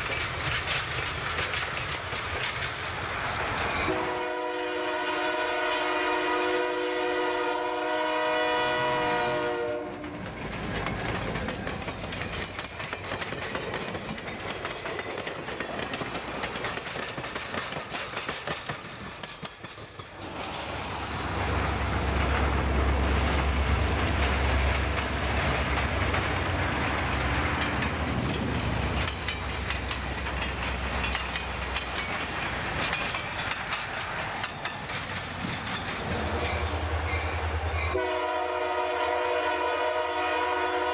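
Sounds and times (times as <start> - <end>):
passing train rattling: 0.0 - 40.9
locomotive air horn chord: 3.9 - 10.1, 37.9 - 40.9.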